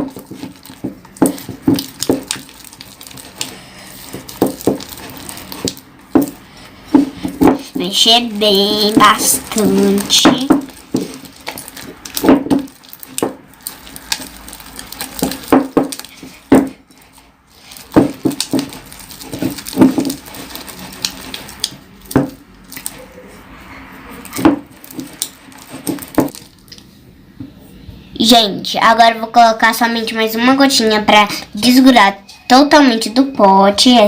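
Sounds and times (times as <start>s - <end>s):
utensil scraping and knocking pot: 0.0s - 23.0s.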